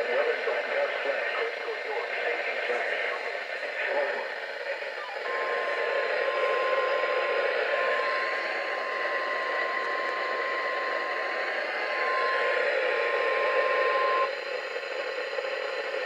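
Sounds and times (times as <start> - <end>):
radio static hiss: 0.0 - 16.0
steady high alarm tone: 5.0 - 16.0.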